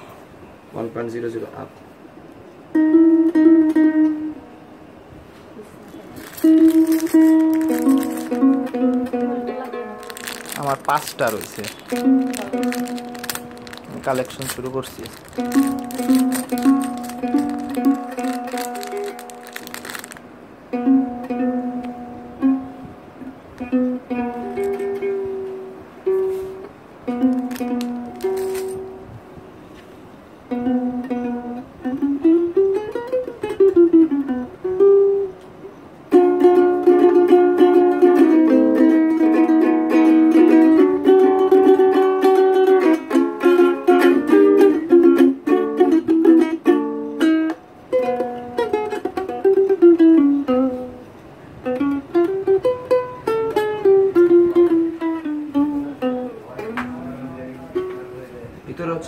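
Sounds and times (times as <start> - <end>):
ukulele single-note runs: 2.7 - 4.5, 6.4 - 26.2
ukulele strummed chords: 2.7 - 4.6, 6.1 - 29.2, 30.4 - 58.1.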